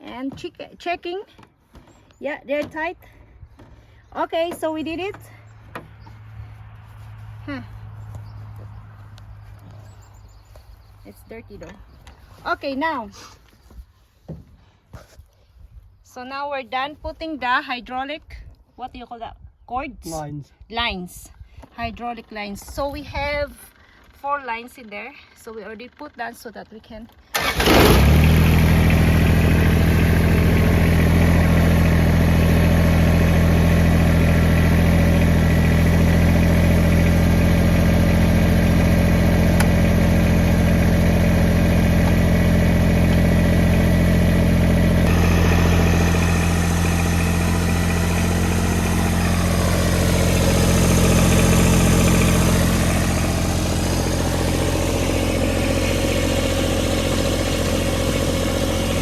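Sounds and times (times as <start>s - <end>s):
diesel tractor engine idling: 27.3s - 59.0s.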